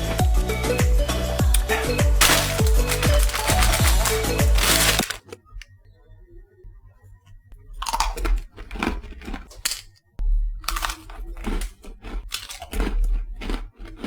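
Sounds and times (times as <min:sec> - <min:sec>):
background music: 0:00.0 - 0:05.4
crunching and chewing biscuit: 0:01.4 - 0:05.7, 0:07.2 - 0:14.0.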